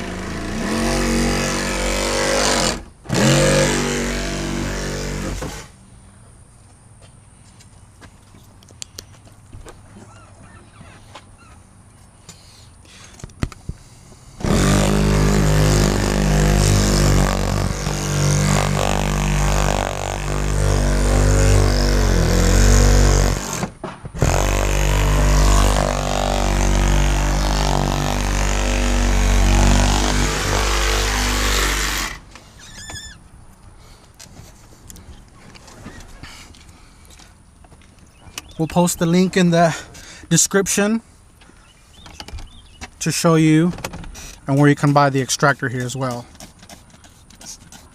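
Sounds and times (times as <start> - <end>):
power tool cutting urethane: 0.0 - 5.7, 14.4 - 32.3.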